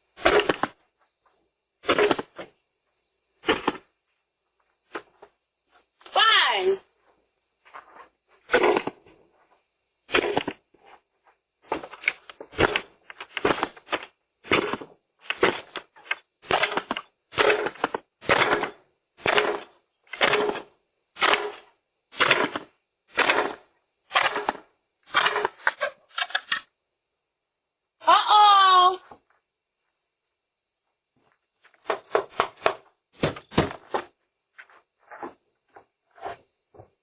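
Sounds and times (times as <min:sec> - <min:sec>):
shoe banging against surface: 0:31.9 - 0:34.1.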